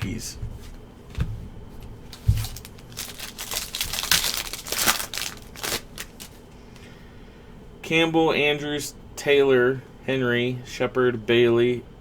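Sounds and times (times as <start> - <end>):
wrapper tearing and crinkling: 2.1 - 6.4.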